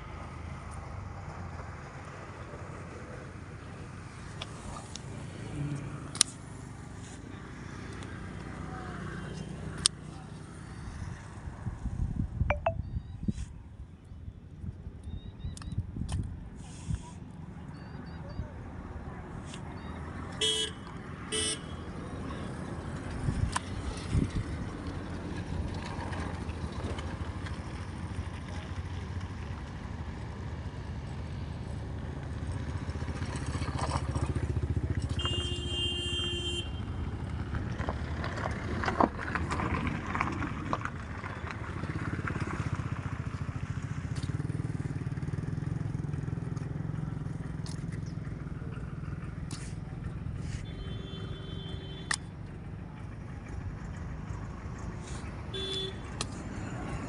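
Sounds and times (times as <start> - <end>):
traffic engines rumbling: 0.0 - 57.0
vehicle horn toots: 20.4 - 21.8, 35.1 - 36.9, 50.5 - 52.2, 55.5 - 56.1.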